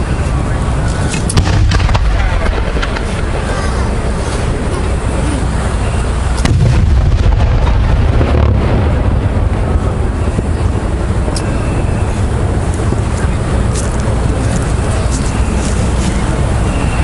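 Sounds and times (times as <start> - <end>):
sharp firework crack: 1.1 - 5.6, 6.2 - 11.4
firework shells booming: 1.1 - 14.0.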